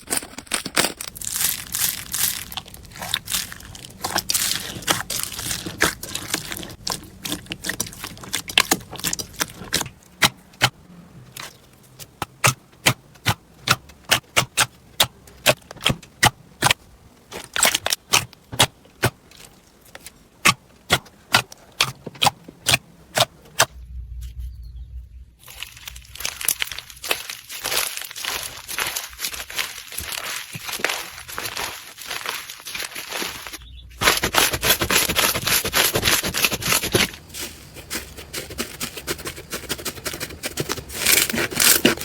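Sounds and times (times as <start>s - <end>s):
low rumble: 22.9s - 29.0s.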